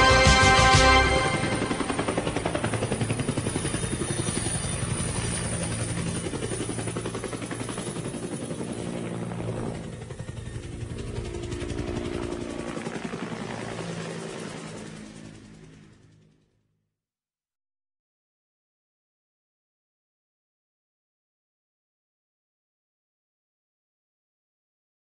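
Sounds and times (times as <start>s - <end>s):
helicopter rotor chopping: 0.0s - 16.4s
helicopter engine drone: 0.0s - 16.6s.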